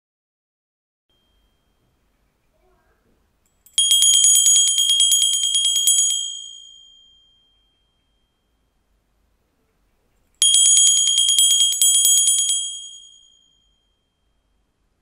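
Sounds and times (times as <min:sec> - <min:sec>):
handbell ringing: 0:03.6 - 0:08.5, 0:10.4 - 0:14.3.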